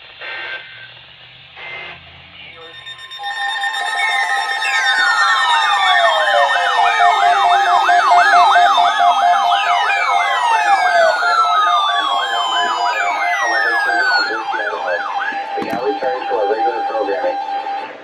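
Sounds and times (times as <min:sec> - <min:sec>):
steady tone: 0:02.6 - 0:17.5
falling whistle-like glides: 0:02.6 - 0:18.0
siren-like warble: 0:02.6 - 0:18.0.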